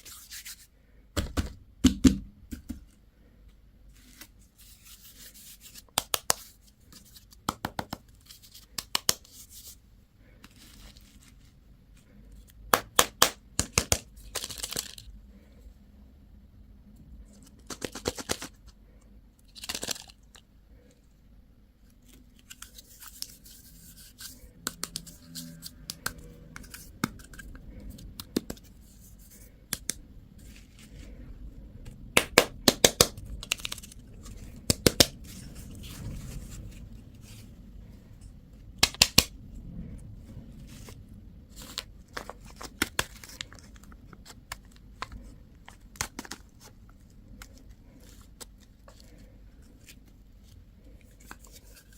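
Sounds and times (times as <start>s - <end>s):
plastic wrappers crinkling and tearing: 33.0s - 36.3s, 40.8s - 50.0s.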